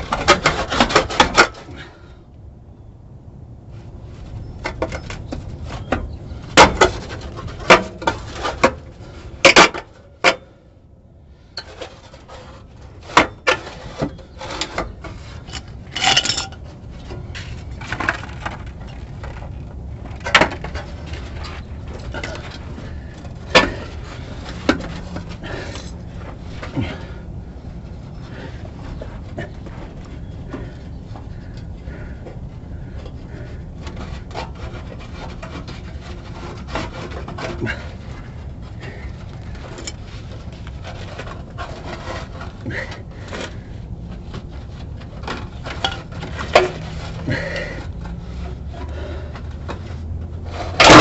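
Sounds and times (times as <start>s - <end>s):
scraping and rubbing: 0.0s - 2.1s, 3.7s - 10.3s, 11.3s - 51.0s
steady low rumble: 0.0s - 51.0s
irregular knocks and clatters: 11.6s - 27.1s.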